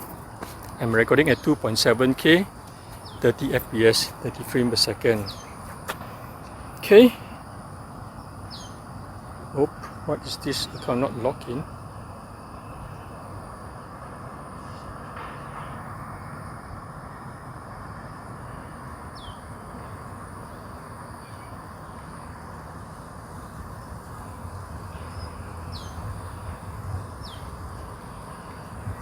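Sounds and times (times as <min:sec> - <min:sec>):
low background hum and hiss: 0:00.0 - 0:29.0
high falling bird chirps: 0:00.9 - 0:05.7, 0:08.1 - 0:09.4.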